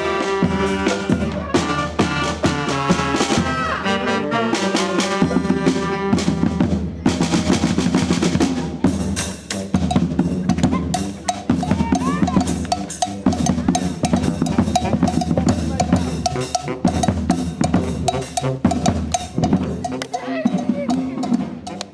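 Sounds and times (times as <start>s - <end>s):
bass drum: 0.0s - 3.8s, 4.7s - 21.9s
drum section playing: 0.0s - 21.9s
snare drum: 4.5s - 21.9s.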